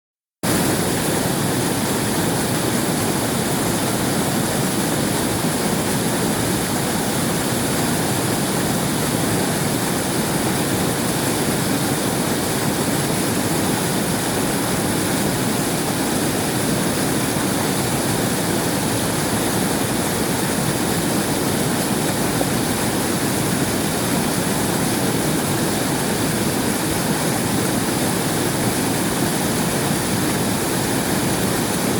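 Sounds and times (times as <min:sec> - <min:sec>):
river water rushing: 0:00.5 - 0:31.9.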